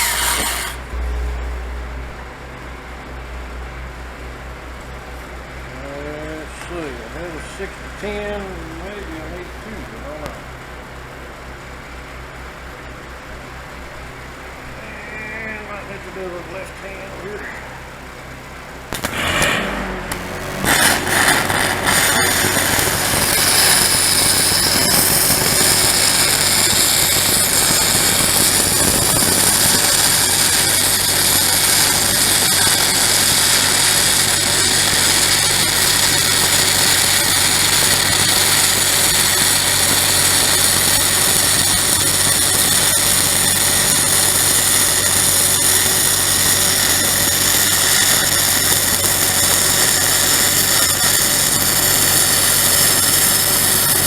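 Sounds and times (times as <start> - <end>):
welding arc crackling hiss: 0.0 - 1.9, 4.8 - 10.6, 18.8 - 54.0
welder engine humming: 0.0 - 54.0.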